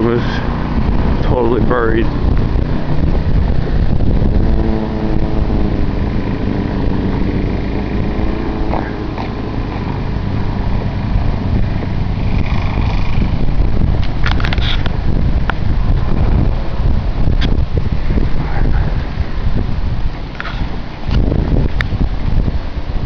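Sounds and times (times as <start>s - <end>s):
engine humming: 0.0s - 23.0s
wind rumbling on microphone: 0.0s - 23.0s.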